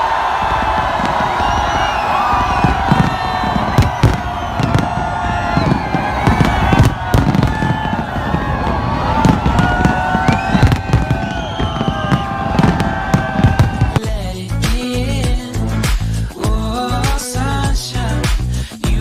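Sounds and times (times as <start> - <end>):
fireworks bangs and crackles: 0.0 - 14.2
pop song: 13.2 - 19.0.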